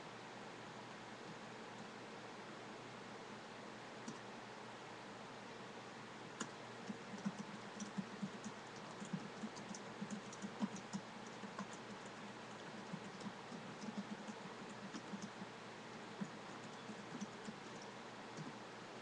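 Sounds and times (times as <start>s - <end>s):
typing on computer keyboard: 6.4s - 18.5s.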